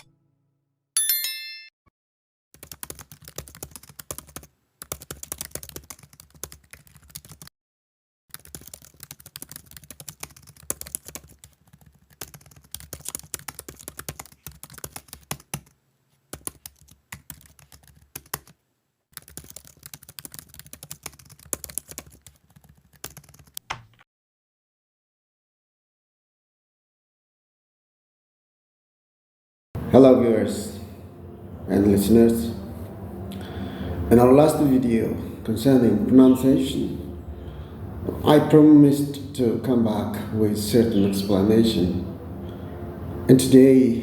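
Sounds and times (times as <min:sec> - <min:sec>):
keyboard typing: 0:02.6 - 0:07.5, 0:08.3 - 0:24.0.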